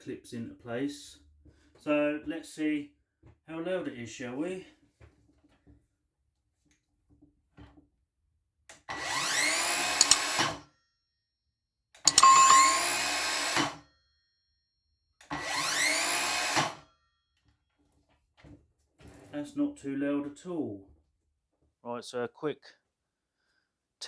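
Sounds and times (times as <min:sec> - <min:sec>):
mitre saw motor whining: 0:08.9 - 0:10.6, 0:12.1 - 0:13.8, 0:15.3 - 0:16.8.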